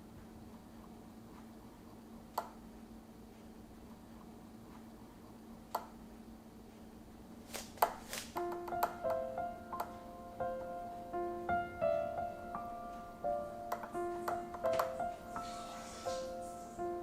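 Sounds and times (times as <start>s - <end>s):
faint steady hum: 0.0s - 17.0s
piano music: 8.2s - 17.0s.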